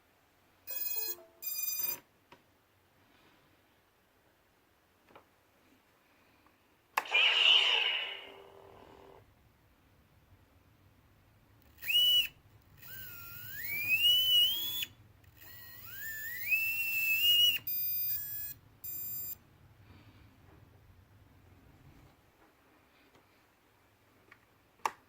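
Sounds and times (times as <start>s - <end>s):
short beeps: 0.7s - 2.0s
short buzzy beeps: 0.7s - 2.0s.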